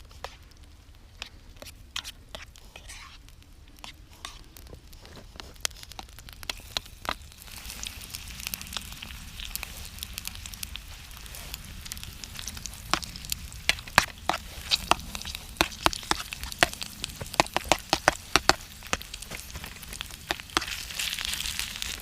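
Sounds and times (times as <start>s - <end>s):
campfire crackling pops: 0.0s - 22.0s
food sizzling in a pan: 6.4s - 22.0s.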